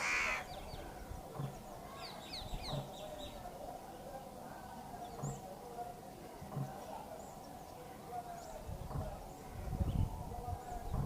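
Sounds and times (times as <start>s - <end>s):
high falling bird chirps: 0.0s - 0.6s
short low bird calls: 0.0s - 0.9s.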